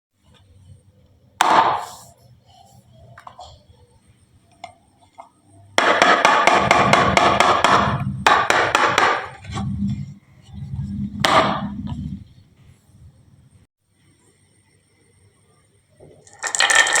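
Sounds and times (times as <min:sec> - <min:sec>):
marbles rolling rumble: 0:16.2 - 0:17.0.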